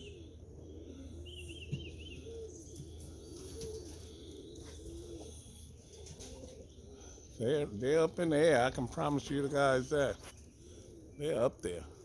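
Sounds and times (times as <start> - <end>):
pigeons cooing: 0.0 - 12.0.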